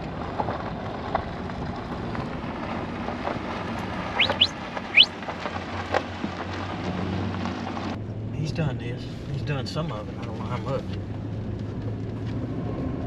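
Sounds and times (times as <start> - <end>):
vehicle running hum: 0.0 - 13.0
short high rising squeaks: 4.2 - 5.1.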